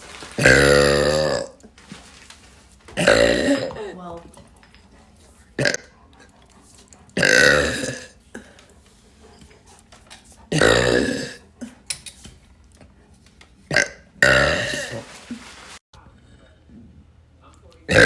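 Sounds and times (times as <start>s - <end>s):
woman burping: 3.0s - 4.1s, 5.6s - 5.9s, 7.2s - 8.1s, 10.5s - 11.4s, 13.7s - 15.0s.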